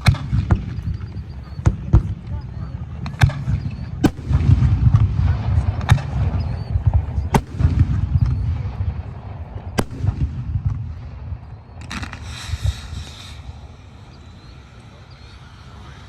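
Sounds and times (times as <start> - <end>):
steady low rumble: 0.0 - 16.0
firework bangs: 3.2 - 15.4
firework hissing burst: 4.0 - 5.0, 9.8 - 10.6, 11.5 - 16.0.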